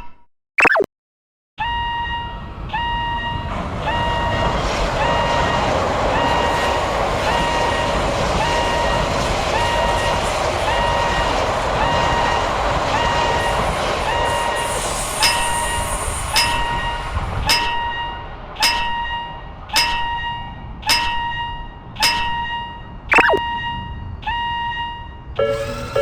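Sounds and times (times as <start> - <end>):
passing train rushing: 2.0 - 21.2
level crossing bell ringing: 23.1 - 23.5.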